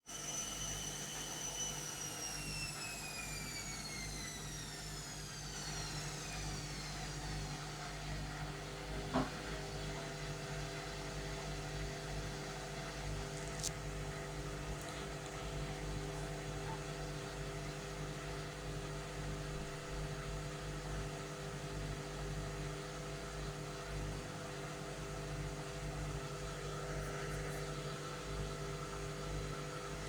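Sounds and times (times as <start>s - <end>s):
washing machine motor whine: 0.0s - 30.0s.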